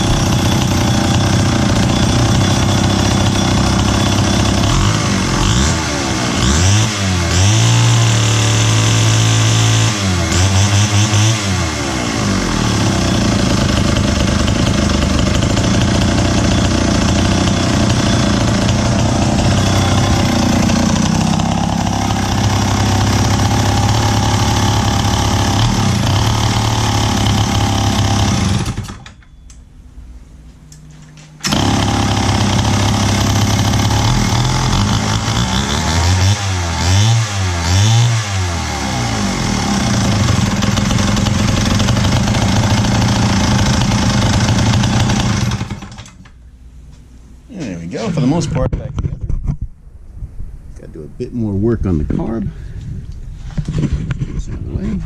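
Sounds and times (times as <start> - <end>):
chainsaw engine revving: 0.0 - 29.0, 31.4 - 46.2.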